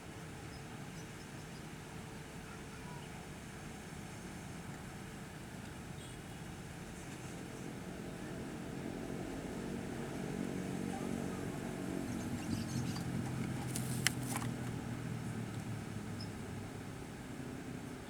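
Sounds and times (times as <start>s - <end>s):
engine humming: 10.9s - 16.6s.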